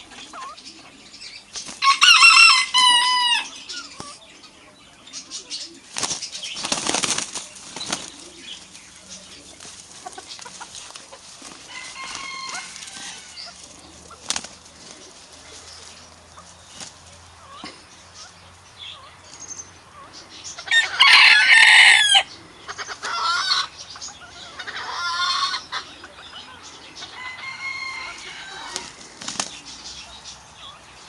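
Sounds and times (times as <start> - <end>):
chicken calling: 0.0 - 1.0, 1.6 - 4.2, 7.8 - 16.5, 19.9 - 29.7
wing flapping: 5.8 - 16.1, 28.6 - 29.8.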